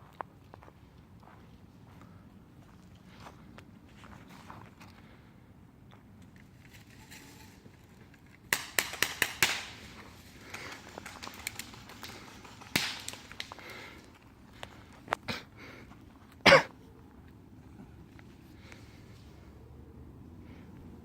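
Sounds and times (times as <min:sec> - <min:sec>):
rustling: 0:06.4 - 0:15.2
sharp cracks: 0:08.4 - 0:14.7.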